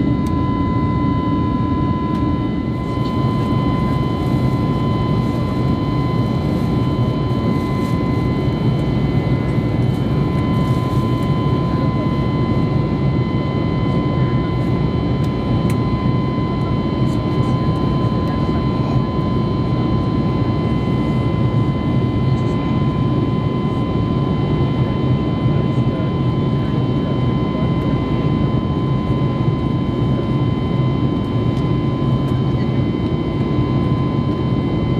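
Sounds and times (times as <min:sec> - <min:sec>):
aircraft cabin rumble: 0:00.0 - 0:16.0
thin steady whine: 0:00.0 - 0:27.9.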